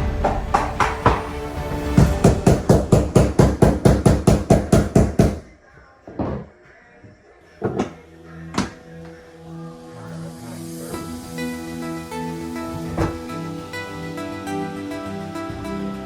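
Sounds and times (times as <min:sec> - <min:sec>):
background music with fast beat: 0:00.0 - 0:05.4, 0:10.1 - 0:16.0.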